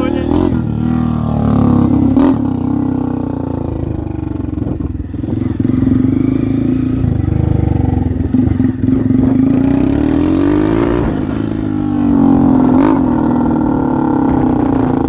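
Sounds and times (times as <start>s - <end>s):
motorcycle engine revving: 0.0s - 15.0s
exhaust pop: 10.8s - 13.4s.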